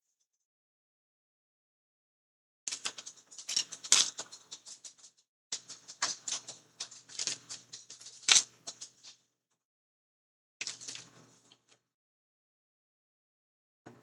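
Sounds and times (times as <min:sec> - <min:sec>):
painting tools clicking and tapping: 0:02.7 - 0:09.2.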